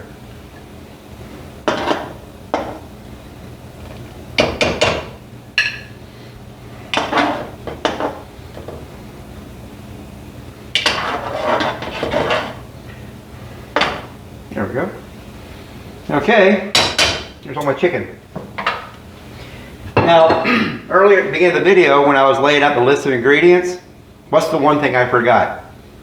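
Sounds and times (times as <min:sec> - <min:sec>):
utensils knocking against pots: 0:01.7 - 0:02.8, 0:04.4 - 0:06.0, 0:06.9 - 0:08.8, 0:10.8 - 0:12.6, 0:16.7 - 0:17.7.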